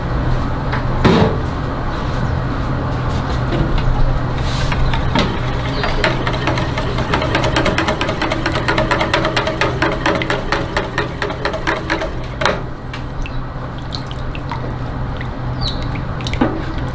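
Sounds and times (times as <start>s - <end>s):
low mechanical hum: 3.4s - 13.8s.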